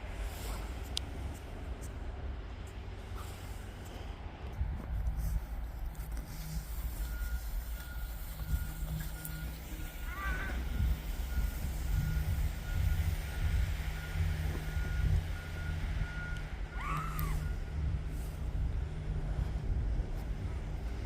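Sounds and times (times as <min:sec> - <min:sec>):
low engine rumble: 0:00.0 - 0:21.0
reversing alarm beeping: 0:06.4 - 0:18.4.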